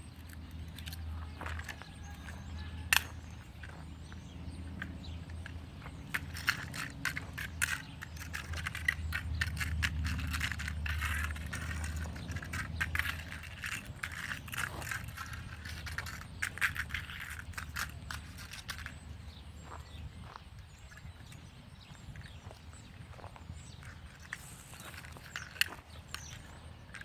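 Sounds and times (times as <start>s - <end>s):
metal pieces clinking in hand: 4.8s - 19.4s
screws scraped off the ground: 23.8s - 27.0s.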